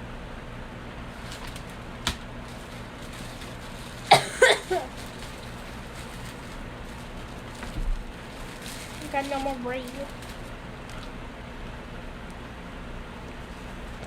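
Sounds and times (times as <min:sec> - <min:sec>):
person coughing: 0:04.1 - 0:05.0.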